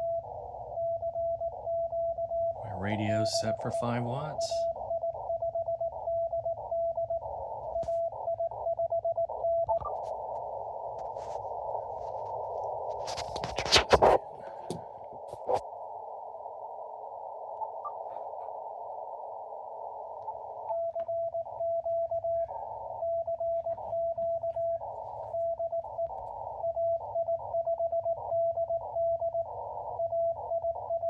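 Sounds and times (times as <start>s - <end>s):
radio band hiss: 2.6s - 4.7s, 11.0s - 15.6s, 17.8s - 18.7s.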